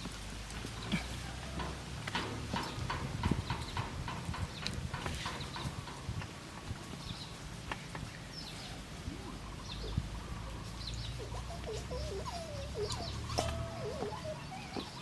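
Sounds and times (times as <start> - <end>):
birds chirping: 0.6 - 15.0
wavering bird calls: 8.3 - 15.0.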